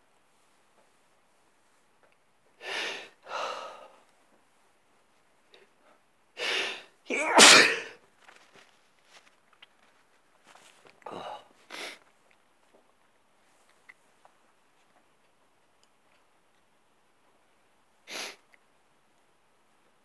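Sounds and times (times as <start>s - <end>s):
man sneezing: 7.1s - 8.0s
faint sniffing: 18.1s - 18.5s.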